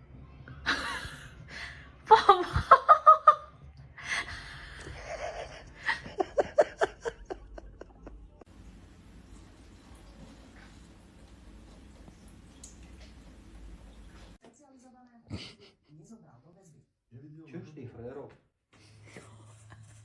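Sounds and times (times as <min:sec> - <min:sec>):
person laughing: 0:04.2 - 0:08.4.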